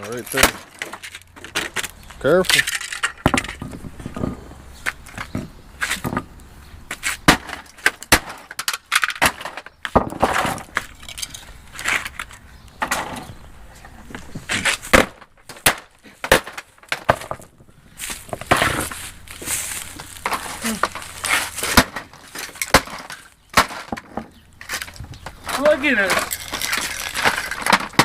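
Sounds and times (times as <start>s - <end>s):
sledgehammer smashing plastic: 0.2s - 1.8s, 7.2s - 10.8s, 14.8s - 17.5s, 20.2s - 24.2s, 25.5s - 28.0s.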